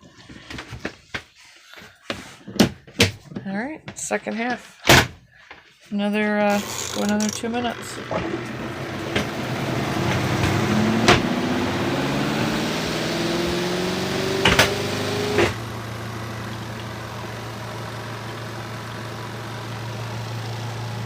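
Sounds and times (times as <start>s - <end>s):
washer spin motor whine: 6.4s - 21.0s
steady low hum: 6.5s - 21.0s
sharp knocks: 14.4s - 15.6s.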